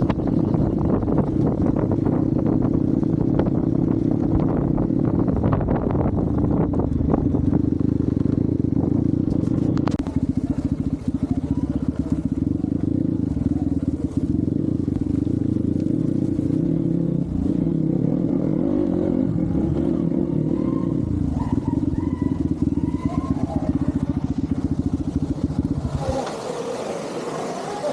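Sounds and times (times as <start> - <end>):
motorcycle engine running: 0.0 - 27.9.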